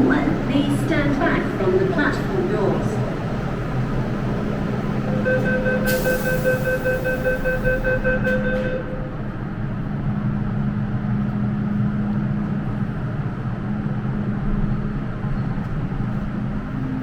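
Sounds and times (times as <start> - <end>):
electric train rumbling: 0.0 - 17.0
door-closing warning beeps: 5.2 - 9.0.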